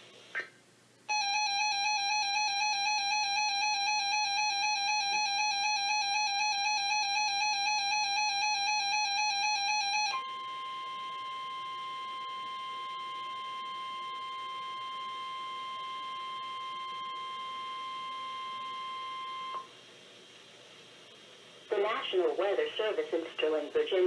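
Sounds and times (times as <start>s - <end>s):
steady warning alarm tone: 1.1s - 19.7s
two-tone alarm: 1.1s - 19.7s.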